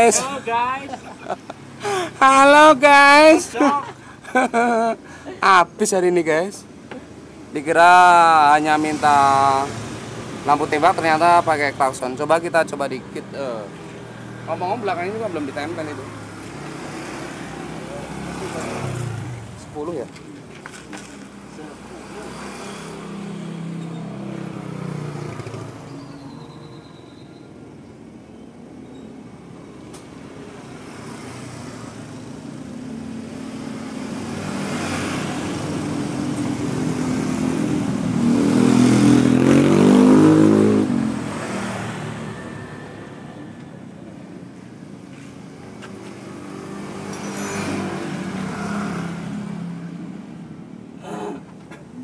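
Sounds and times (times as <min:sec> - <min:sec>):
vehicle engines passing by: 0:00.0 - 0:52.0.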